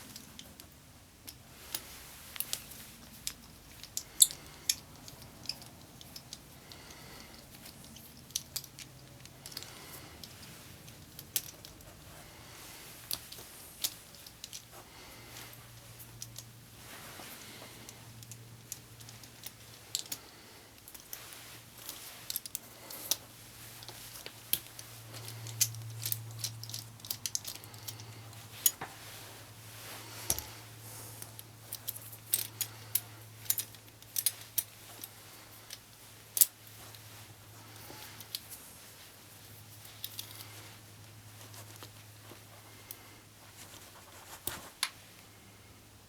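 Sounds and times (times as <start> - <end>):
low electrical hum: 0.0 - 46.0
metallic clicks and clinks: 0.1 - 11.9, 13.0 - 14.7, 15.4 - 28.8, 31.2 - 37.1.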